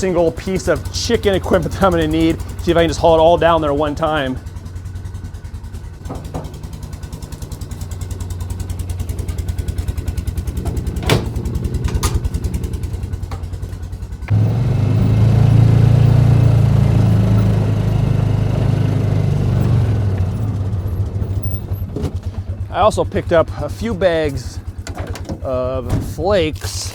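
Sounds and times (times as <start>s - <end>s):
vehicle engine idling: 0.0s - 26.9s
sharp knocks: 6.0s - 6.9s.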